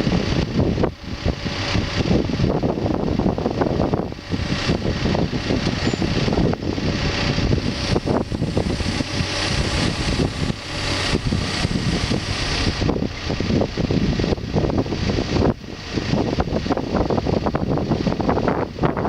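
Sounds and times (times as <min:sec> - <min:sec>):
backhoe engine running: 0:00.0 - 0:19.0.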